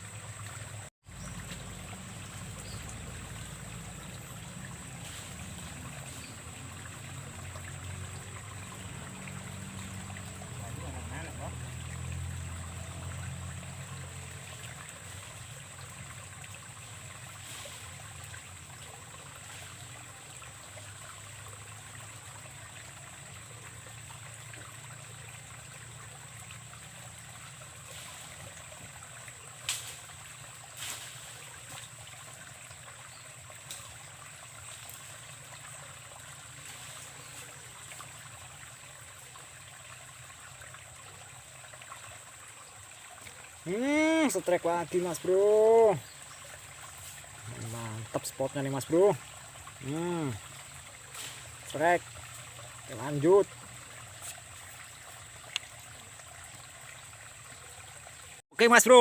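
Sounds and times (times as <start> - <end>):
water trickling in a ditch: 0.0 - 59.0.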